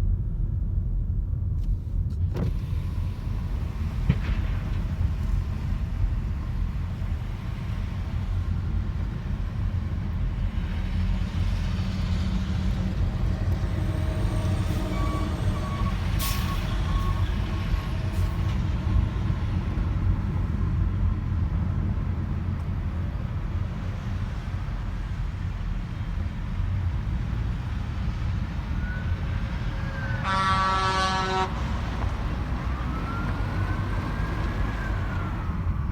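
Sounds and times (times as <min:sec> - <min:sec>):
low rumble of road traffic: 0:00.0 - 0:35.9
faint siren wails: 0:13.3 - 0:19.2, 0:28.4 - 0:35.9
car horn: 0:29.9 - 0:32.0.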